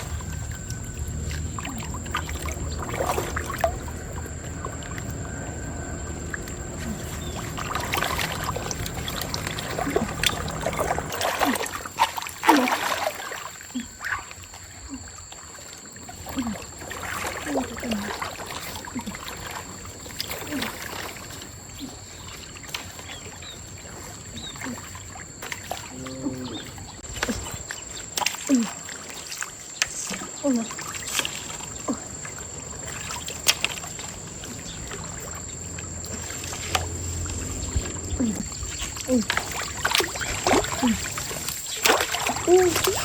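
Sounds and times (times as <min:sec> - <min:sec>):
low water rush: 0:00.0 - 0:43.0
stream water splashing: 0:00.0 - 0:43.0.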